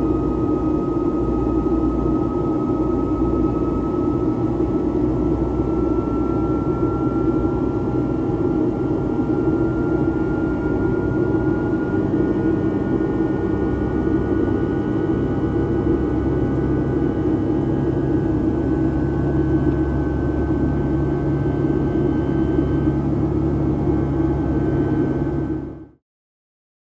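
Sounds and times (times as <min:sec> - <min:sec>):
low engine hum: 0:00.0 - 0:26.0.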